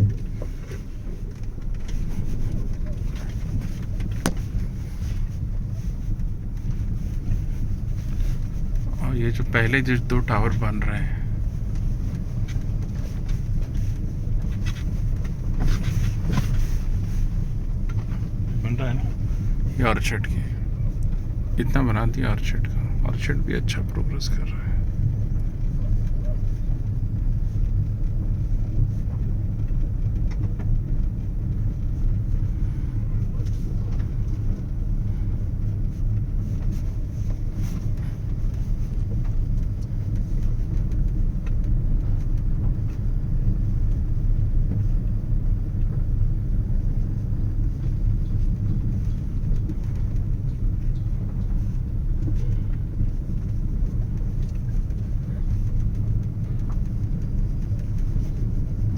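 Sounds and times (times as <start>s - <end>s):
moving car rumble: 0.0s - 58.9s.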